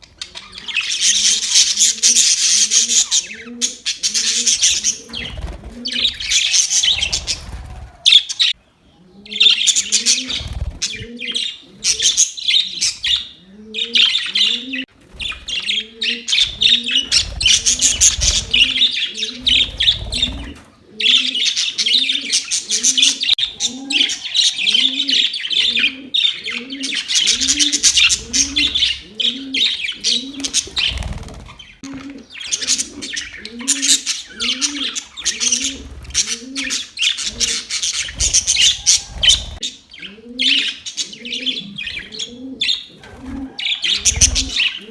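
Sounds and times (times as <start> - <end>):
budgerigars chirping: 9.3 - 43.0.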